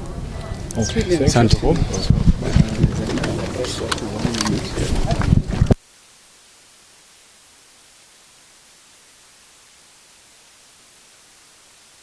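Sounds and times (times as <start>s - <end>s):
faint electronic hiss: 3.6s - 12.0s.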